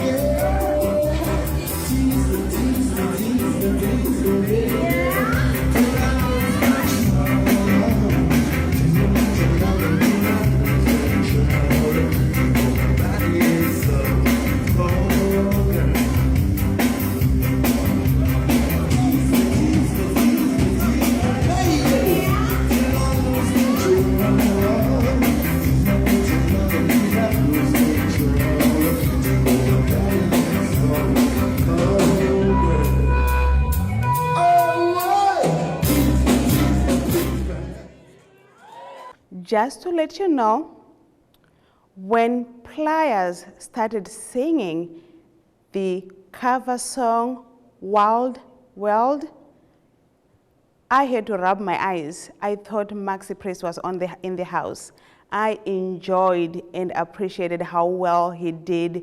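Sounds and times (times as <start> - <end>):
person singing: 0.0 - 16.9, 17.6 - 38.0
live reggae band: 0.0 - 38.0.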